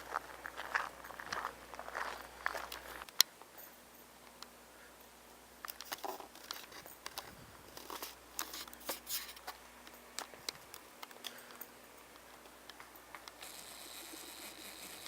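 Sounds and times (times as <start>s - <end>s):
camera handling clicks and rustles: 5.7s - 9.6s.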